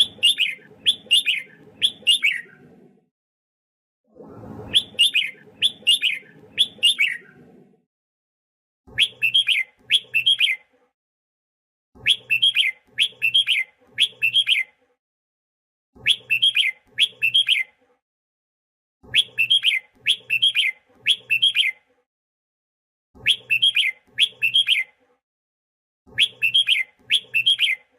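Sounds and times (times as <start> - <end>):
bulbul whistled song: 0.0 - 2.6, 4.6 - 7.4, 8.9 - 10.6, 12.0 - 14.7, 16.0 - 17.7, 19.1 - 21.8, 23.2 - 25.0, 26.1 - 27.9.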